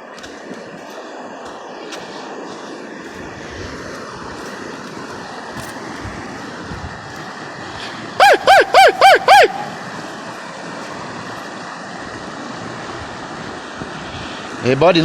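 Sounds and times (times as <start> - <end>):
dog yelping: 8.2 - 10.0.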